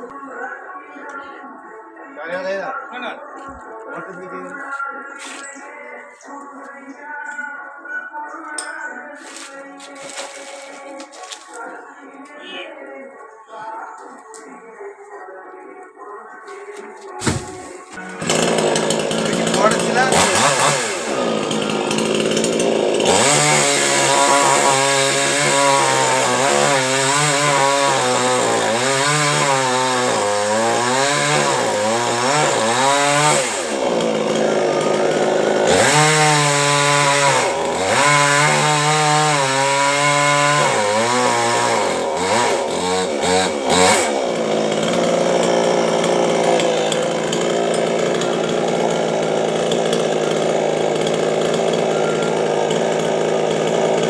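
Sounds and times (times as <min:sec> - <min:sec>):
chainsaw cutting wood: 0:09.2 - 0:11.7, 0:17.2 - 0:54.0.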